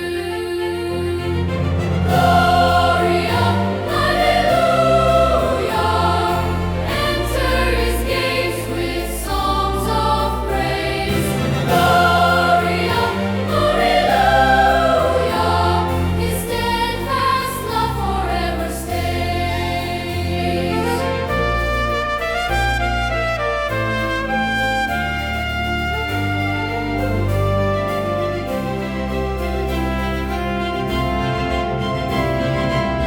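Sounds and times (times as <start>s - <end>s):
choir singing: 0.0s - 21.8s
instrumental accompaniment: 0.0s - 33.0s.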